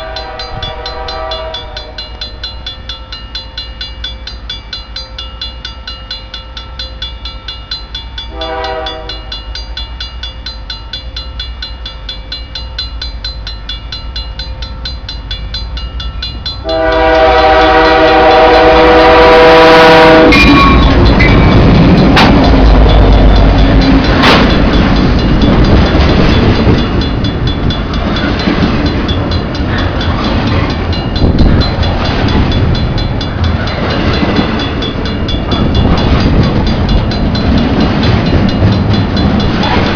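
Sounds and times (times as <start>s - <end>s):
train horn blasts: 0.0s - 2.3s, 8.3s - 9.4s, 16.6s - 21.8s
level crossing bell ringing: 0.0s - 18.7s, 20.1s - 39.9s
train rumbling past: 0.0s - 39.9s
wheel clatter on rails: 20.3s - 39.9s.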